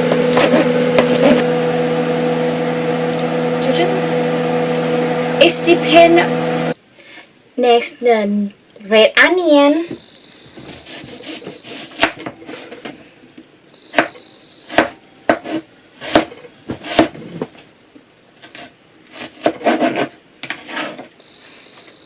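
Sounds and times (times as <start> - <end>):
knife chopping on cutting board: 0.1 - 1.4, 10.7 - 12.4, 13.9 - 17.2, 18.4 - 20.9
knife scraping board: 0.1 - 1.5, 10.6 - 12.8, 14.7 - 17.6, 18.4 - 21.6.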